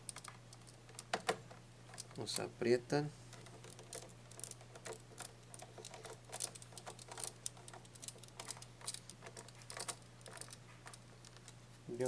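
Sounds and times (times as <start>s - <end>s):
small clicks and taps: 0.0s - 2.5s.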